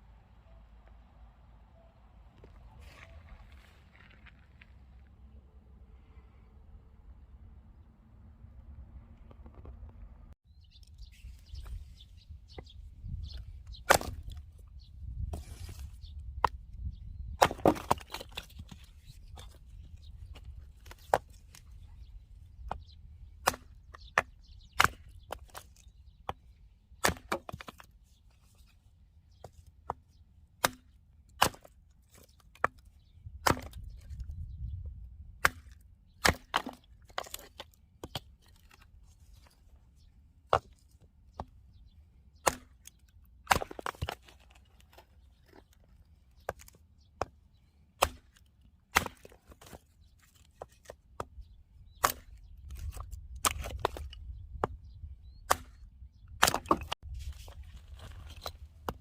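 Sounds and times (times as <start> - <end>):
axe splitting firewood: 13.7 - 14.5, 17.3 - 21.8, 22.6 - 28.0, 29.5 - 34.3, 35.2 - 39.0, 40.5 - 41.6, 42.4 - 45.8, 48.0 - 54.8, 55.4 - 59.0.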